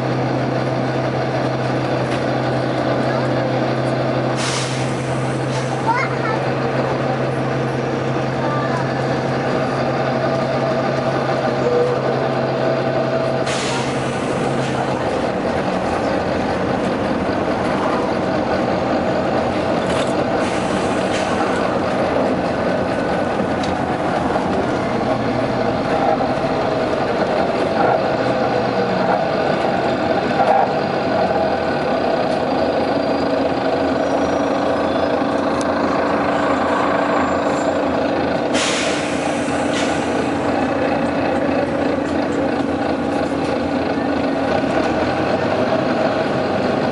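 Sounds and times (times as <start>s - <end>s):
bus engine running: 0.0s - 46.9s
air hissing bursts: 4.4s - 5.7s, 13.4s - 14.4s, 38.5s - 40.4s.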